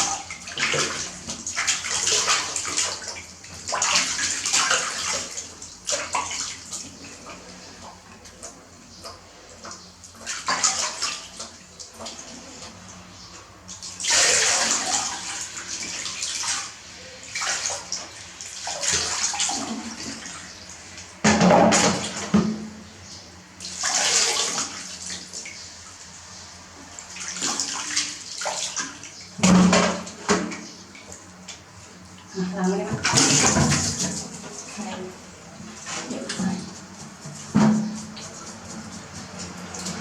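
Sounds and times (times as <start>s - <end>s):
bath water splashing and pouring: 13.8s - 20.4s, 23.7s - 25.4s.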